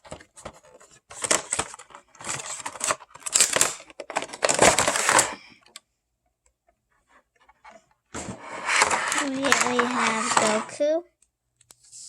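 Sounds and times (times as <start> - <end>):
packaging crinkling and tearing: 0.0 - 5.5, 8.8 - 10.7.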